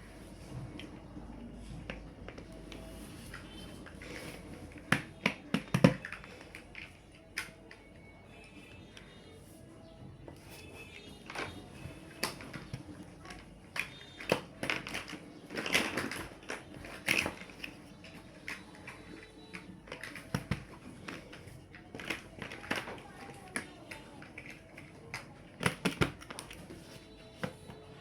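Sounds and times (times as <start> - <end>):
plastic blocks clicking together: 12.1 - 26.6.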